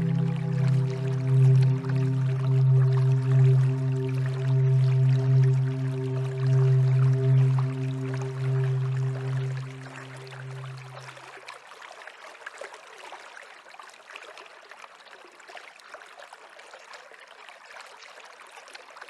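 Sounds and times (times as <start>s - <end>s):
low held music tones: 0.0s - 11.2s
small stream running: 0.0s - 19.0s.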